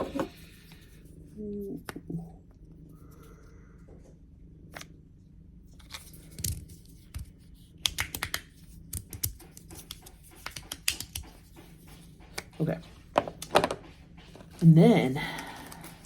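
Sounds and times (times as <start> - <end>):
plastic pieces clicking: 7.8 - 11.2.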